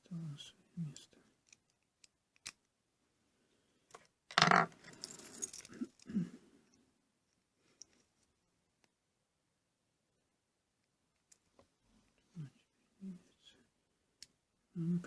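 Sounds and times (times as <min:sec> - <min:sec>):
small metal parts clinking: 0:04.3 - 0:06.1.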